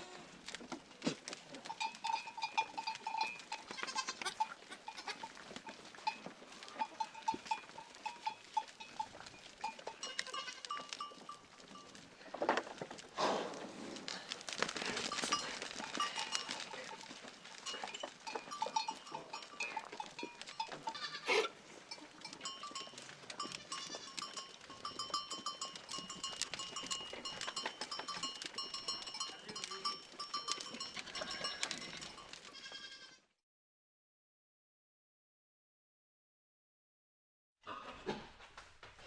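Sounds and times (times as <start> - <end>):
goats bleating: 0.0 - 0.4, 2.5 - 8.1, 9.7 - 11.0, 15.1 - 25.4, 30.6 - 33.2
livestock bells clinking: 1.4 - 12.4, 14.7 - 32.9.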